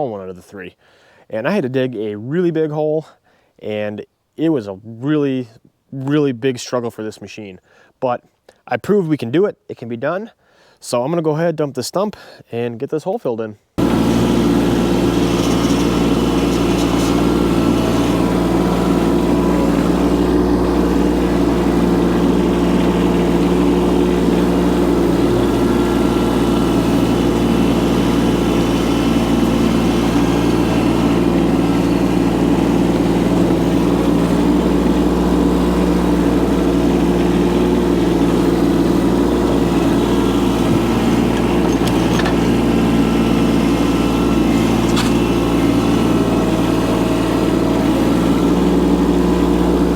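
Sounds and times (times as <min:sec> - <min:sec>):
excavator engine running: 0:13.8 - 0:49.9.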